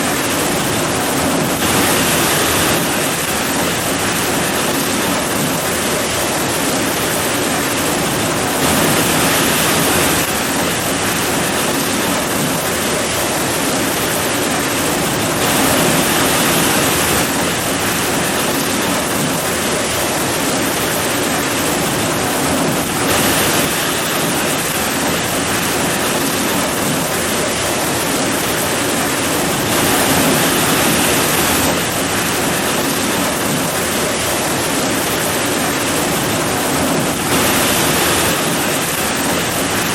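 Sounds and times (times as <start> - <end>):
heavy rain pouring: 0.0 - 39.9.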